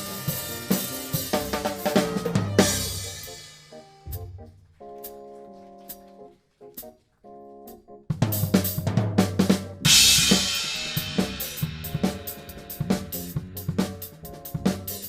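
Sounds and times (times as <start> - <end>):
snare and kick drum strokes: 0.0 - 5.2, 8.1 - 15.0
big band music: 0.0 - 5.3, 8.1 - 15.0
cymbal crash: 9.9 - 13.4.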